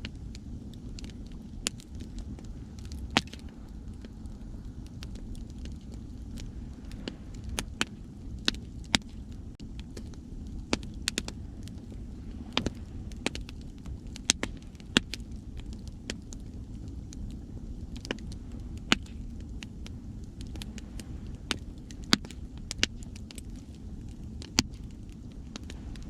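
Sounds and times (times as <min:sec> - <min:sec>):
wood fire crackling: 0:00.0 - 0:26.0
sea waves rushing: 0:06.4 - 0:07.9.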